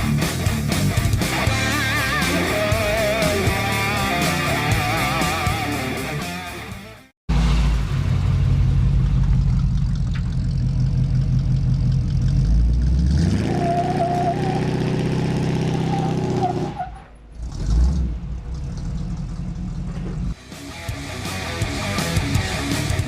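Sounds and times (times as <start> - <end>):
truck engine revving: 7.3 - 23.0.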